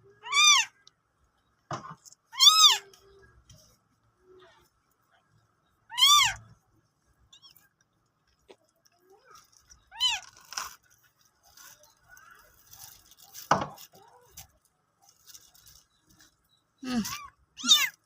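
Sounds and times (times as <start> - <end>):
kittens mewing: 5.9 - 6.5, 16.8 - 18.0.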